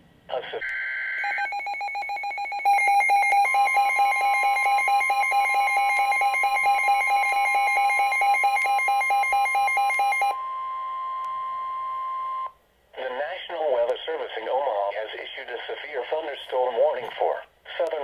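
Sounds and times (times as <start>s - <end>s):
steady warning alarm tone: 0.6s - 12.5s.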